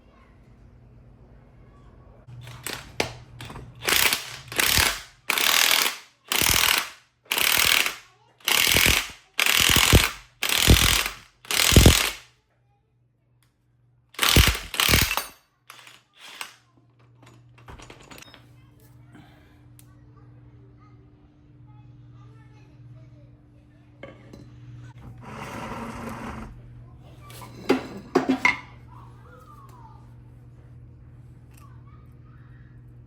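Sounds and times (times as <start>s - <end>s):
ratchet wrench ratcheting: 2.4s - 12.2s, 14.2s - 16.6s.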